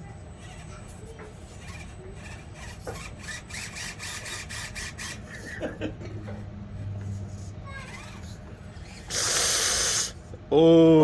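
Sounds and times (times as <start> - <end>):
small electric motor whining: 0.3 - 5.5, 7.1 - 10.2.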